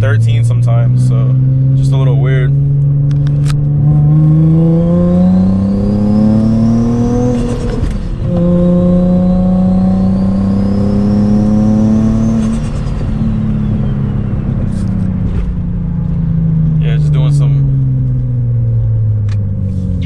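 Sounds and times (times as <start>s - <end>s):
car engine accelerating: 0.0s - 20.0s
faint turbo whistle: 12.4s - 15.0s.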